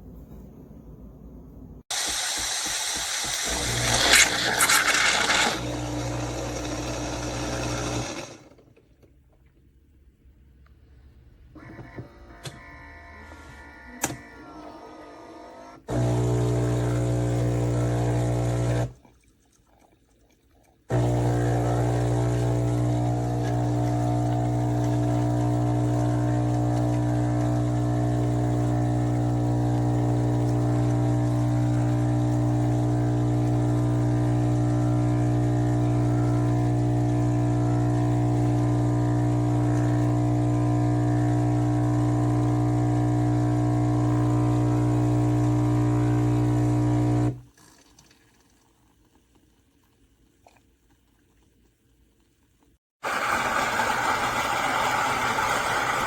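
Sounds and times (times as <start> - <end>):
espresso machine pump humming: 1.9 - 8.6, 15.9 - 19.0, 20.9 - 47.4, 53.0 - 56.0.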